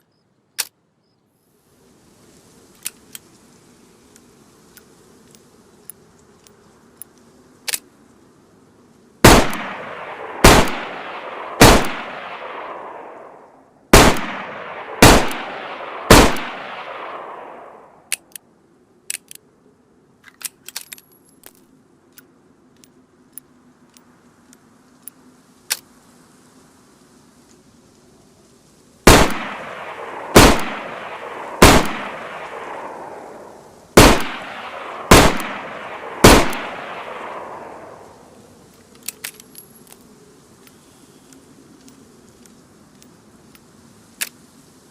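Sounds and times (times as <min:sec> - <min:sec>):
sharp gun clicks: 0:00.6 - 0:00.8, 0:09.2 - 0:13.4, 0:14.0 - 0:19.5, 0:29.1 - 0:38.2, 0:38.8 - 0:40.0.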